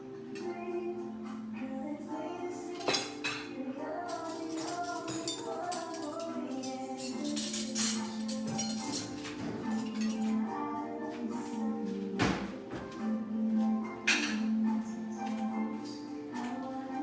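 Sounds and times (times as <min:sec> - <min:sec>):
background music: 0:00.0 - 0:17.0
cutlery and dishes clinking: 0:02.7 - 0:10.5, 0:14.0 - 0:17.0.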